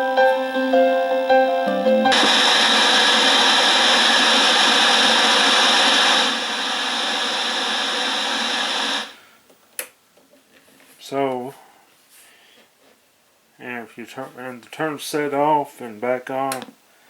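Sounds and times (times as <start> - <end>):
tv static hiss: 2.1 - 9.4.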